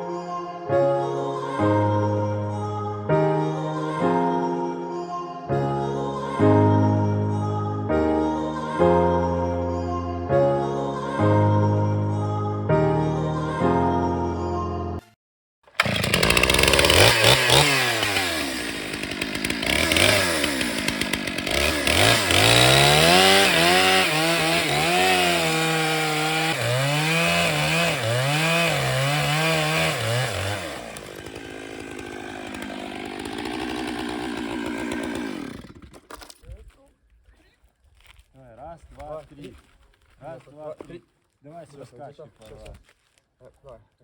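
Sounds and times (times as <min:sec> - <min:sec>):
chainsaw revving: 0:15.7 - 0:36.3.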